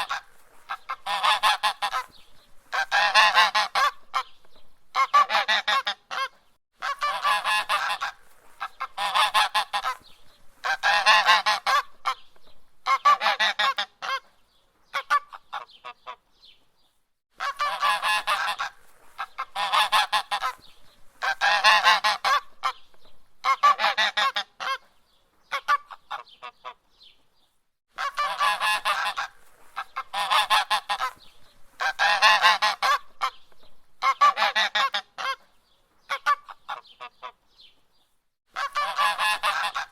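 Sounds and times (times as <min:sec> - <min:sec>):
goose honking: 0:00.0 - 0:04.3, 0:04.9 - 0:10.0, 0:10.6 - 0:12.2, 0:12.8 - 0:14.2, 0:17.4 - 0:20.6, 0:21.2 - 0:22.8, 0:23.4 - 0:24.8, 0:28.0 - 0:33.4, 0:34.0 - 0:35.4, 0:38.6 - 0:39.9.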